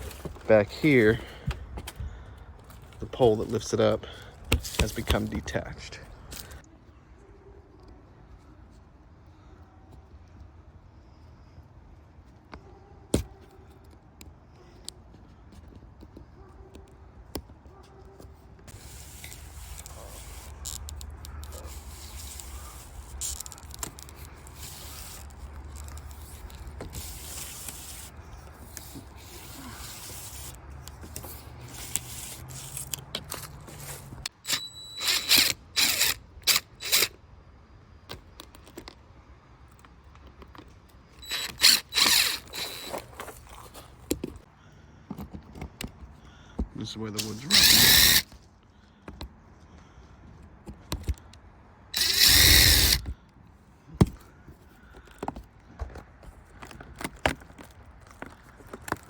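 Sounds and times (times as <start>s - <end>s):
power drill bursts: 34.3s - 37.1s, 41.2s - 43.0s, 47.2s - 48.2s, 52.0s - 53.1s.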